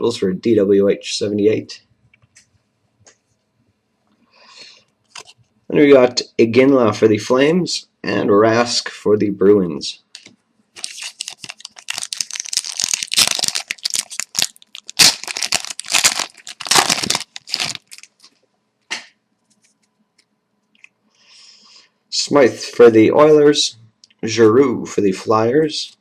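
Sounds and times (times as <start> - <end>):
foil wrapper tearing and crinkling: 10.2 - 18.3.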